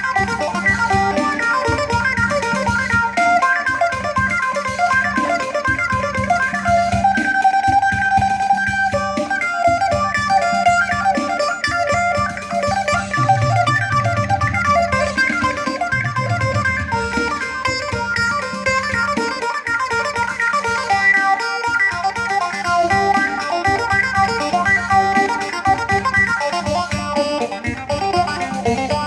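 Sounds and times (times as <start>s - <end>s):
electric lute picked melody: 0.0s - 29.0s
drone string: 10.6s - 19.2s.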